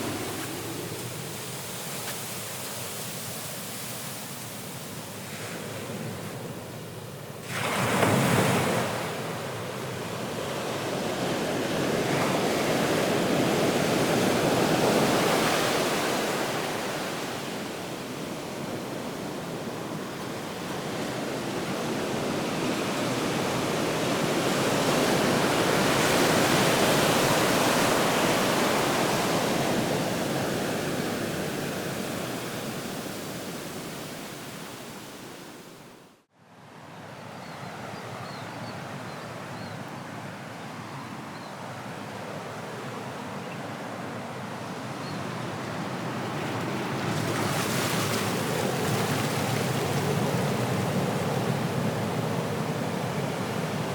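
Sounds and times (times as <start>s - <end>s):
ocean waves crashing ashore: 0.0s - 53.9s.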